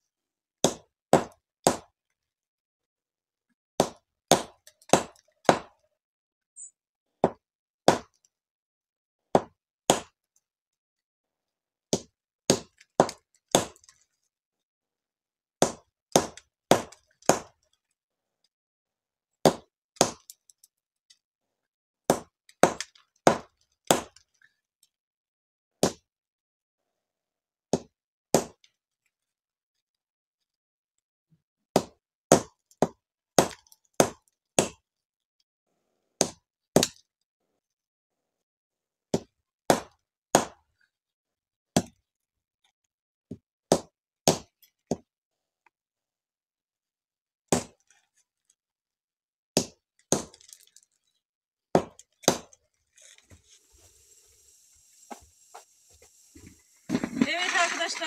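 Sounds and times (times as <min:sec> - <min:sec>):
fruit stones being cracked: 0:56.9 - 0:58.0.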